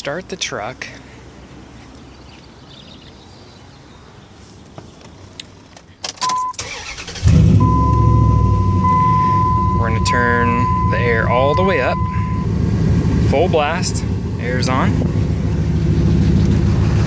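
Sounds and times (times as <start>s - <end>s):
truck engine starting and idling: 6.1s - 17.0s
steady high tone: 7.5s - 12.6s.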